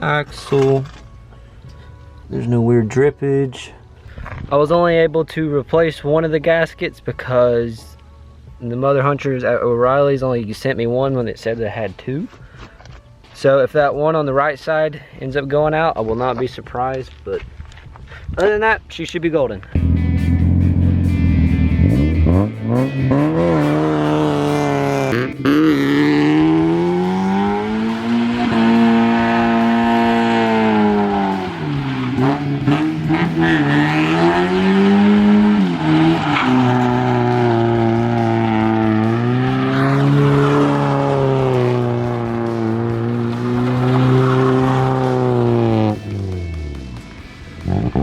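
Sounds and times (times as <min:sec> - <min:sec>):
car engine revving: 0:19.8 - 0:48.0.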